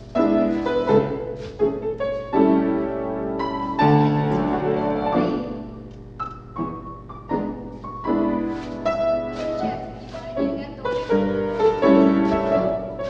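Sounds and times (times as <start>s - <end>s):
solo piano: 0.0s - 13.0s.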